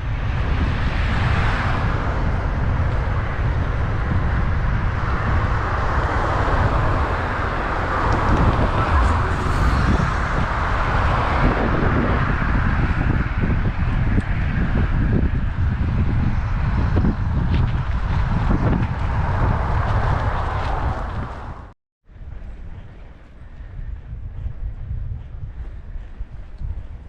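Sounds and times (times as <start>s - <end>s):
road traffic noise: 0.0s - 24.0s
wind buffeting microphone: 0.0s - 27.0s.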